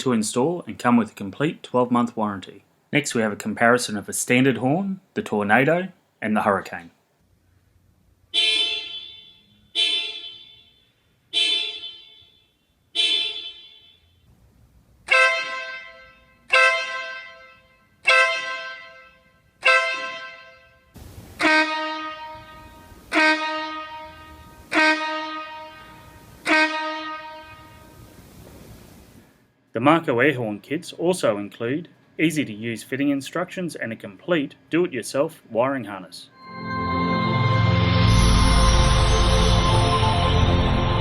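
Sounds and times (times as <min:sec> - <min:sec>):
car horn blasts: 0:08.4 - 0:14.2, 0:15.1 - 0:28.1
air horn blasts: 0:15.1 - 0:28.1.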